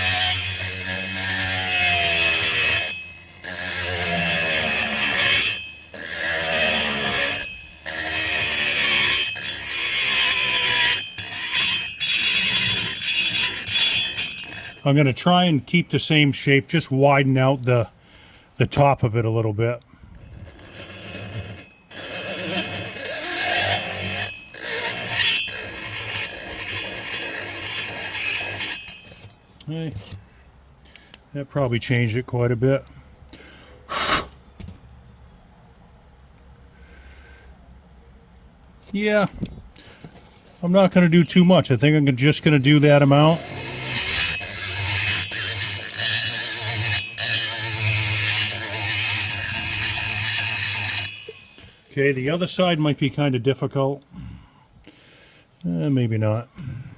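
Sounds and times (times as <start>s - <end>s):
die grinder cutting metal: 0.0s - 17.5s, 20.2s - 30.2s, 40.6s - 53.4s.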